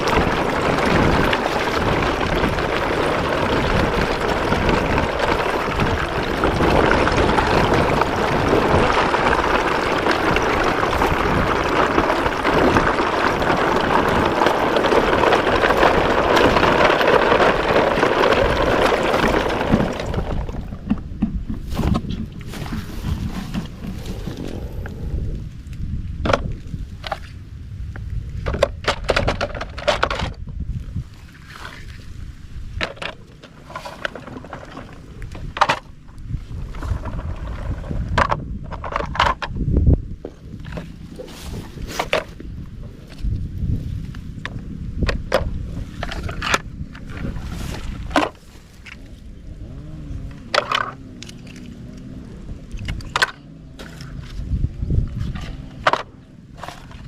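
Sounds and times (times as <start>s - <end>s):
plastic toy vehicles clattering: 0.0s - 24.6s, 28.4s - 30.5s, 32.8s - 43.4s, 44.4s - 57.0s
low rumble: 0.0s - 29.7s.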